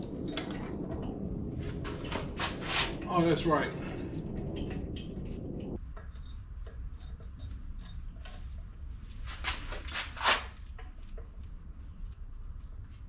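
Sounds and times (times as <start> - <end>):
steady low hum: 0.0 - 13.0
short scrapes: 2.4 - 3.0, 9.3 - 10.6.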